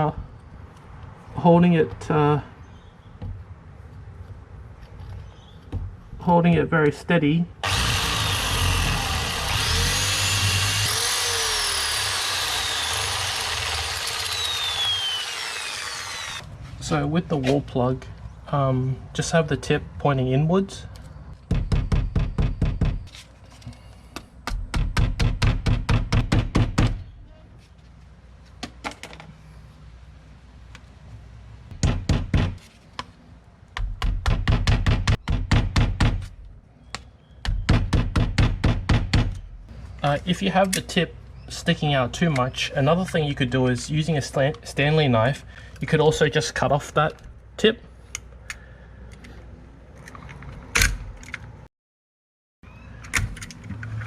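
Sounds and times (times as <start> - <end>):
power drill boring into brick: 7.6 - 16.4.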